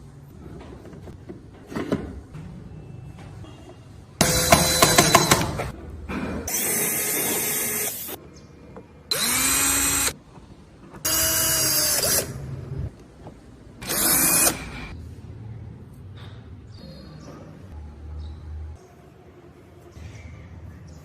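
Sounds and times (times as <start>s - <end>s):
power carving tool whining: 9.1s - 10.1s.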